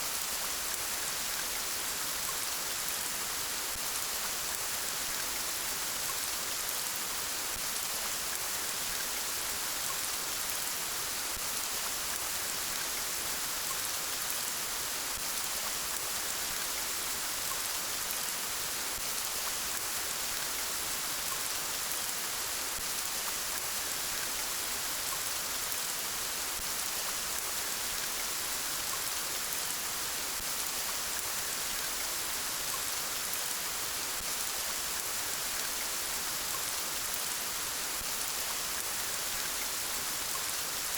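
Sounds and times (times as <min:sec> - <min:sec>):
steady rainfall: 0:00.0 - 0:40.9.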